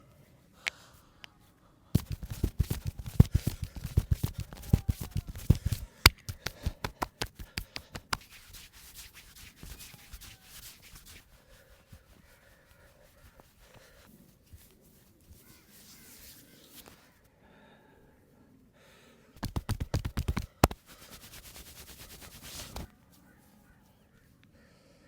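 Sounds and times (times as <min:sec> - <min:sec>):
light sharp taps: 0:02.0 - 0:08.6, 0:19.4 - 0:20.8
hands slapping body: 0:02.0 - 0:11.2, 0:19.4 - 0:22.9
hands rubbing skin and hair: 0:02.0 - 0:17.1, 0:19.4 - 0:23.3.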